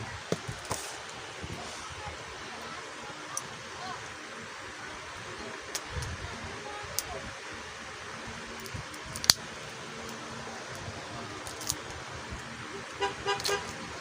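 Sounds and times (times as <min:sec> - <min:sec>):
steady background hiss: 0:00.0 - 0:14.0
plastic puzzle cube clicking: 0:08.6 - 0:09.4, 0:11.4 - 0:11.9.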